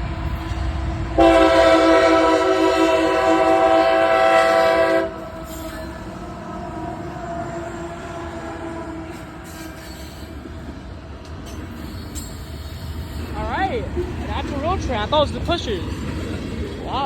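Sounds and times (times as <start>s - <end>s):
train rumbling on rails: 0.0s - 17.0s
locomotive air horn: 1.2s - 9.4s.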